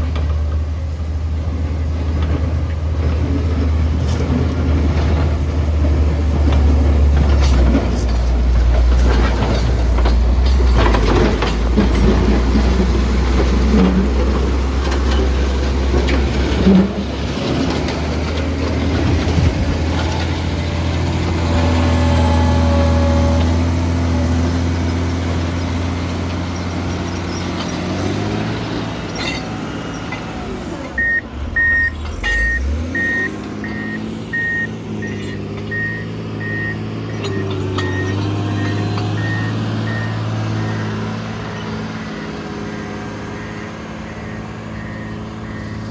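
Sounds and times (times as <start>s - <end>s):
diesel engine running: 0.0s - 45.9s
reversing alarm beeping: 21.2s - 24.2s, 30.9s - 45.9s.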